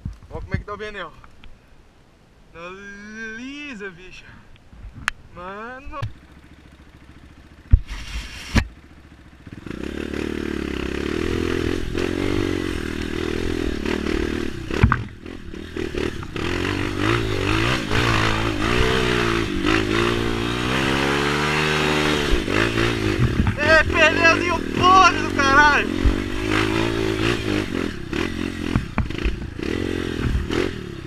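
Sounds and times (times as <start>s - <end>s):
dirt bike engine revving: 5.9s - 31.0s
sharp knocks: 14.7s - 15.2s, 28.6s - 29.5s.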